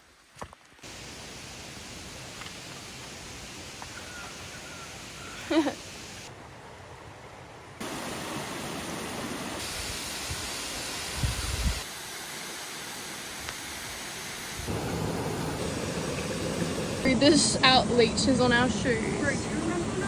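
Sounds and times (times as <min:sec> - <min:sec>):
falling water hiss: 0:00.0 - 0:06.3, 0:07.8 - 0:20.0.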